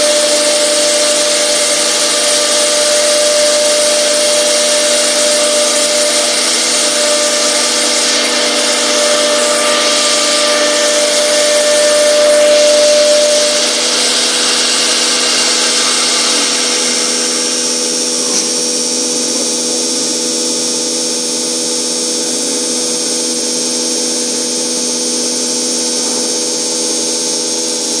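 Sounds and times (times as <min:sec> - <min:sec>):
cnc router spindle whining: 0:00.0 - 0:28.0
hiss of cutting: 0:00.0 - 0:28.0.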